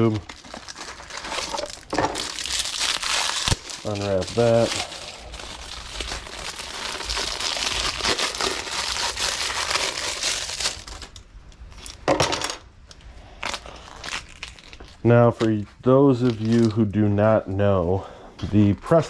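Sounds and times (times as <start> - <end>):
packaging crinkling: 0.0 - 12.0, 13.3 - 16.9.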